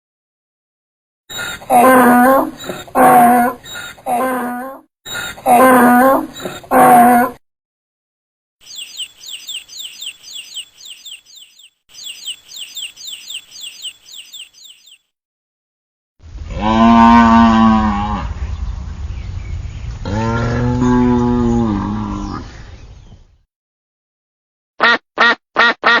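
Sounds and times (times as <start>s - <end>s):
high chirps sweeping down: 8.6s - 15.0s
cow mooing: 16.5s - 18.3s, 20.1s - 22.5s.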